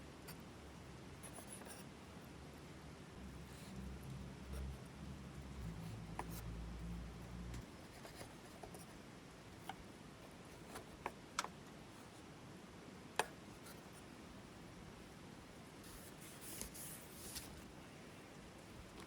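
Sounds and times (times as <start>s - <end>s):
faint low hum: 0.0s - 19.0s.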